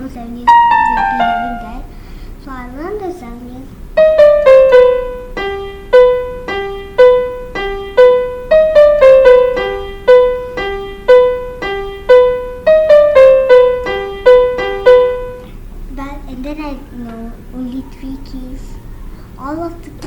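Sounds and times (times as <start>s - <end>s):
electronic keyboard melody: 0.4s - 1.9s, 4.0s - 15.5s.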